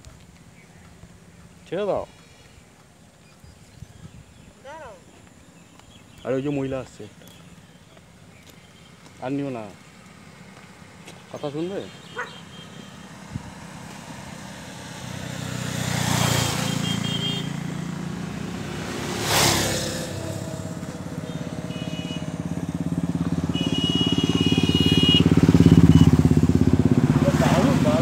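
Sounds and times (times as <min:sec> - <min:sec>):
motorcycle engine running: 0:12.1 - 0:28.0.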